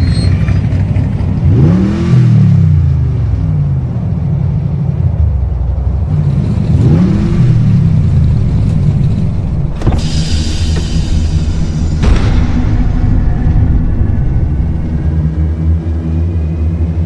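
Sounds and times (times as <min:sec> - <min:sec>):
distorted synth bass: 0:07.1 - 0:17.0
cymbal-like wash: 0:10.0 - 0:16.4.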